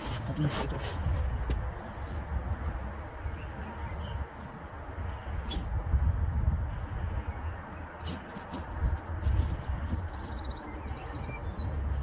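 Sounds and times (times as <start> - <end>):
low rumbling noise: 0.0 - 12.0
bird chirping trill: 10.0 - 12.0.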